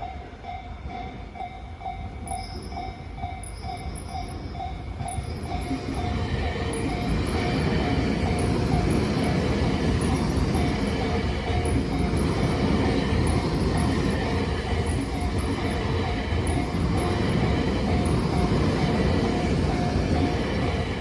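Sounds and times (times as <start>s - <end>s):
train rumbling: 0.0s - 21.0s.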